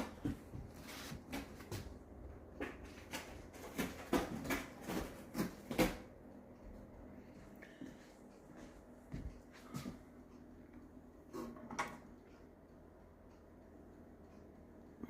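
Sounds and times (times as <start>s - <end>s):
appliance knocks and clatters: 0.0s - 6.1s.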